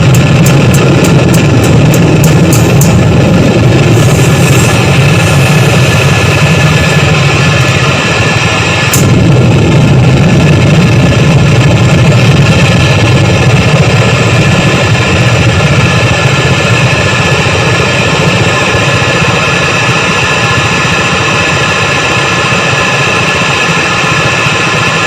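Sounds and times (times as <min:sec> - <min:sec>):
harsh distorted noise music: 0:00.0 - 0:21.1.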